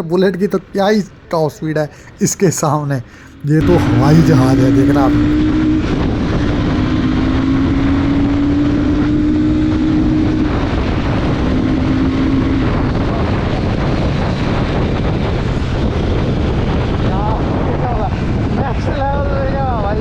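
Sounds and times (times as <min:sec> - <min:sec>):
motorcycle engine drone: 0:03.0 - 0:18.4
wind buffeting microphone: 0:03.0 - 0:20.0.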